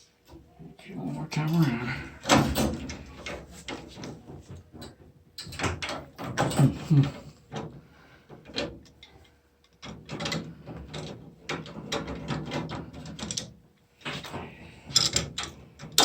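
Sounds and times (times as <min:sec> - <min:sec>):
clicking and rattling: 0:01.5 - 0:16.0.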